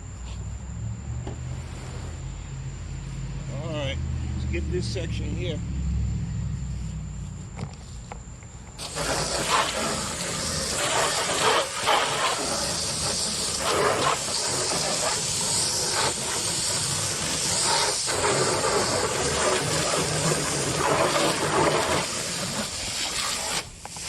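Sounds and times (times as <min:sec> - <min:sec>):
hose spray hissing on metal box: 0:08.8 - 0:24.0.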